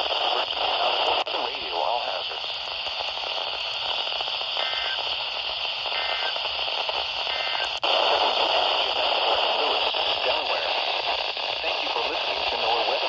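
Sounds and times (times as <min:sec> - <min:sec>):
radio static hiss: 0:00.0 - 0:13.0
two-tone digital data bursts: 0:04.6 - 0:05.1, 0:05.9 - 0:06.4, 0:07.3 - 0:07.8.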